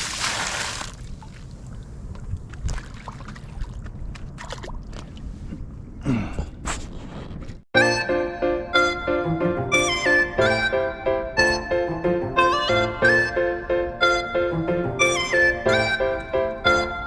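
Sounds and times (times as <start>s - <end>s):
music: 7.8s - 17.0s.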